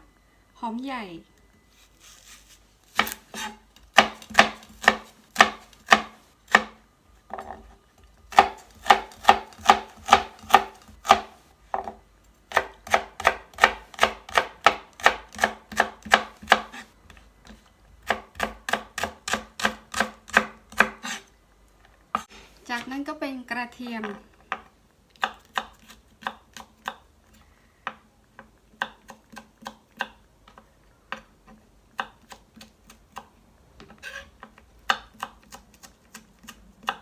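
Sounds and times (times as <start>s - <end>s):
knife chopping on cutting board: 2.2s - 6.8s, 8.3s - 16.9s, 17.5s - 21.2s, 24.0s - 27.0s, 27.9s - 31.3s.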